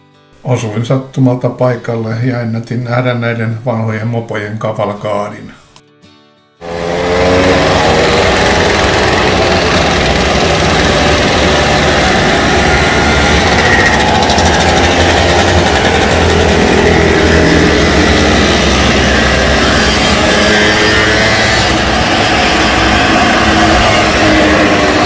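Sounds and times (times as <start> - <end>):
mopeds buzzing past: 6.6 - 25.0.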